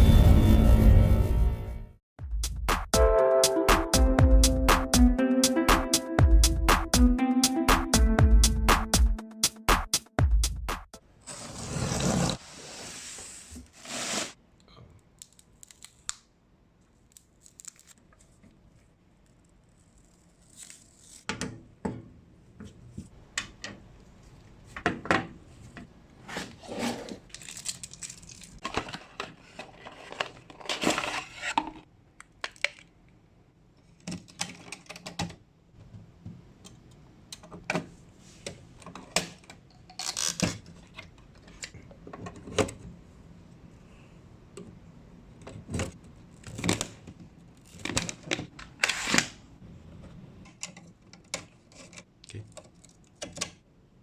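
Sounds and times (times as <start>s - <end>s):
packaging crinkling and tearing: 27.2s - 29.2s.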